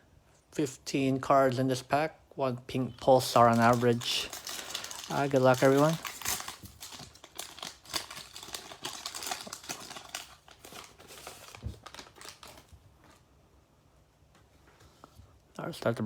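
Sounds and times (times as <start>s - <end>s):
card pack wrapper crinkling and tearing: 2.9s - 13.2s.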